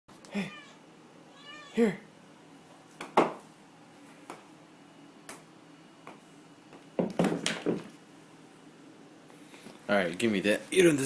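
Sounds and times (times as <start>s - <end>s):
rapid knocks: 7.0s - 7.9s.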